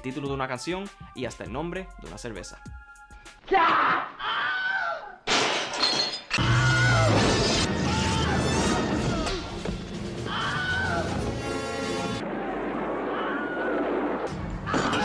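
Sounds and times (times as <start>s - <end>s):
music: 0.0s - 3.4s, 6.4s - 12.2s
shattering crash: 5.3s - 8.7s.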